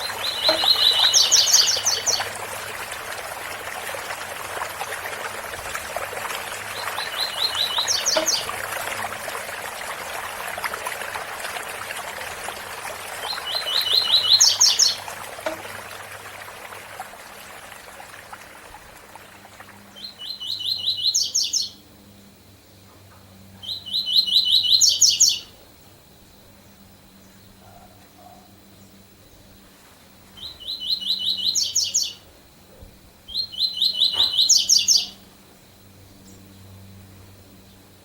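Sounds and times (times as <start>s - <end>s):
bird singing repeated notes: 0.0s - 2.3s, 6.7s - 8.5s, 13.3s - 15.6s, 33.3s - 35.2s
waterfall rushing: 0.0s - 16.7s.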